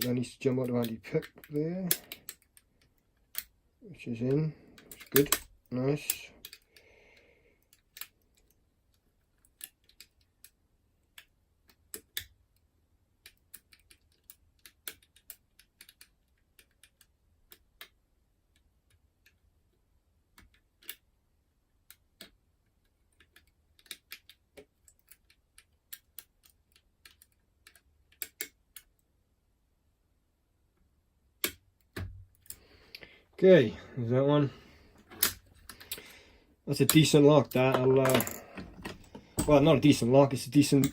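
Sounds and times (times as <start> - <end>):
lock pick metallic clicks: 0.0 - 3.5, 4.3 - 6.8, 13.2 - 17.9, 23.1 - 29.0, 31.4 - 32.6, 35.0 - 36.1, 36.8 - 40.9.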